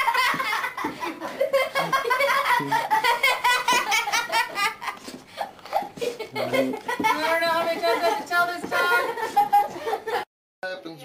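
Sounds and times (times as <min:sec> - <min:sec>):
person laughing hard: 0:00.0 - 0:08.2.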